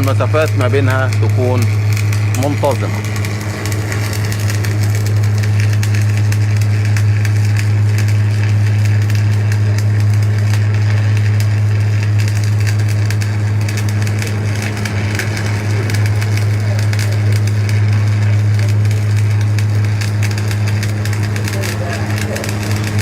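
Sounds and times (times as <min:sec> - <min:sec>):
welding arc crackling: 0:00.0 - 0:23.0
welding machine humming: 0:00.0 - 0:23.0.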